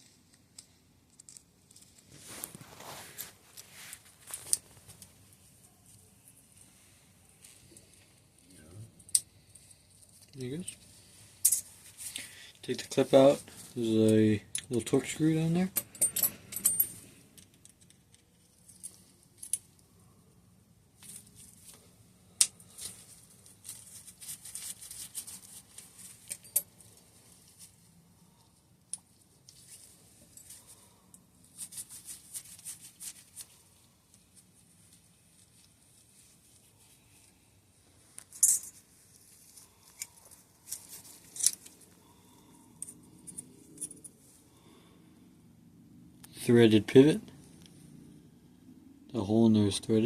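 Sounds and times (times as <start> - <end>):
small tools clicking and scraping: 0.0 - 5.1, 7.4 - 19.8, 21.0 - 35.8, 38.1 - 44.2.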